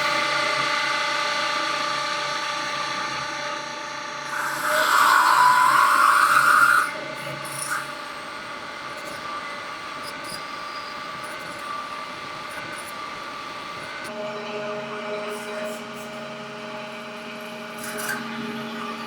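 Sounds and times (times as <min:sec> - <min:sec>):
lathe cutting and running: 0:00.0 - 0:10.7
high screech of drill cutting: 0:04.2 - 0:08.4.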